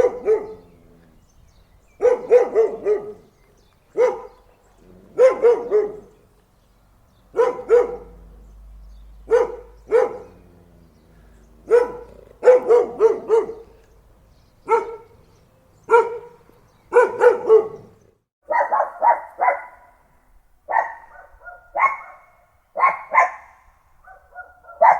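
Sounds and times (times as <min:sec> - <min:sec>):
dog barking: 0:00.0 - 0:00.7, 0:02.0 - 0:03.3, 0:03.9 - 0:04.5, 0:05.1 - 0:06.2, 0:07.3 - 0:08.3, 0:09.2 - 0:10.5, 0:11.6 - 0:13.8, 0:14.6 - 0:15.2, 0:15.9 - 0:20.0, 0:20.7 - 0:24.9.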